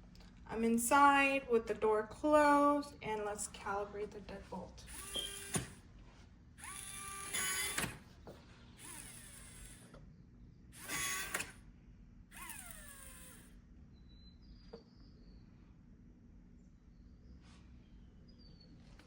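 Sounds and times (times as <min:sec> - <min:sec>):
smart lock motor running: 0:04.8 - 0:05.8, 0:06.5 - 0:08.2, 0:08.8 - 0:10.0, 0:10.7 - 0:11.7, 0:12.3 - 0:13.6.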